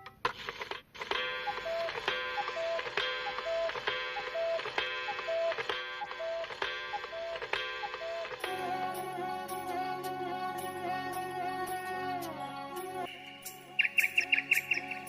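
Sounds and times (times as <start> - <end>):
even ticking beat: 13.1 - 15.0.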